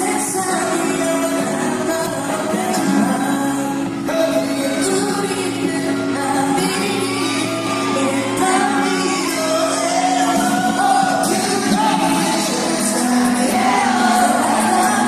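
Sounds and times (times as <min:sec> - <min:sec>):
live pop singing with band: 0:00.0 - 0:15.0
fans shouting and whooping: 0:04.6 - 0:15.0.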